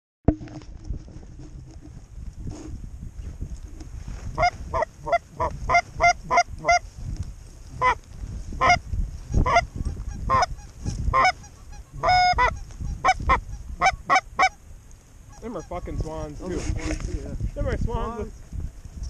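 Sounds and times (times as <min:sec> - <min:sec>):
wind rumble on microphone: 0:00.3 - 0:19.0
goose honking: 0:04.4 - 0:06.8, 0:07.8 - 0:08.0, 0:08.6 - 0:14.6, 0:15.3 - 0:16.1.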